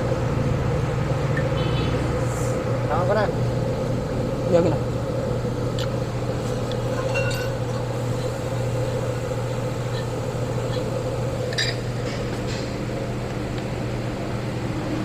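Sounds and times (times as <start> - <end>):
metallic clinks of tools: 6.9 - 7.6.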